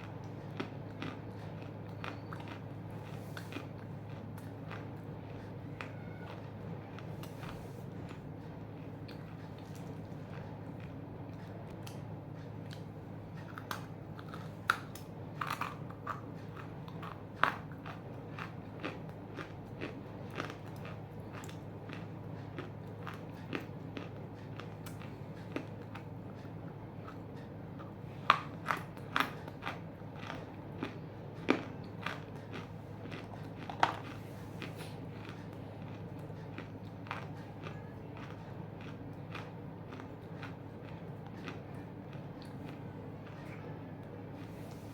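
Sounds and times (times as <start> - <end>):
crunchy chewing: 0.0 - 44.9
steady low hum: 0.0 - 44.9.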